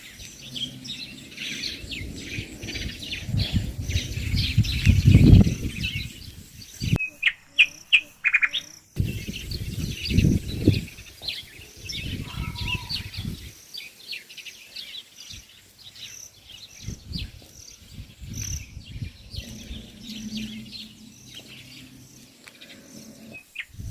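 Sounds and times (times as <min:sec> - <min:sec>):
birds chirping in chorus: 0:00.0 - 0:23.9
low rumble: 0:00.3 - 0:06.5, 0:16.9 - 0:23.9.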